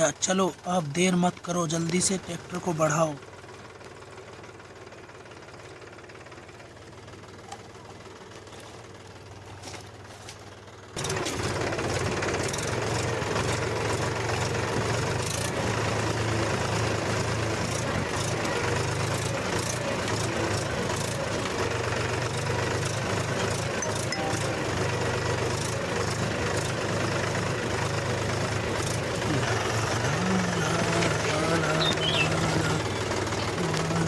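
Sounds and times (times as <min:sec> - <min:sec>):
toy tractor motor drone: 0:14.3 - 0:34.0.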